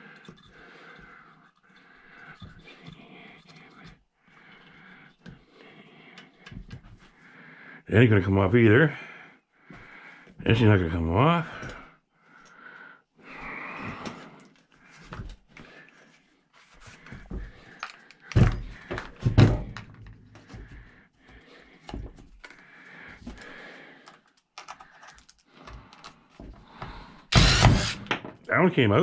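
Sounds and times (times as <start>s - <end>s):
hand tools clicking and scraping: 0.0s - 6.8s, 16.8s - 19.2s, 20.0s - 26.2s
loud thunks: 18.4s - 19.9s.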